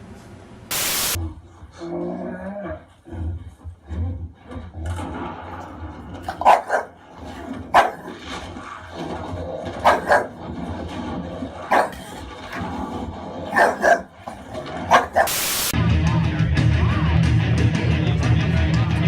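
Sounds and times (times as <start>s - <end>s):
dog barking: 6.3s - 7.0s, 7.7s - 8.2s, 9.8s - 10.4s, 11.7s - 12.3s, 13.5s - 14.2s, 14.8s - 15.6s.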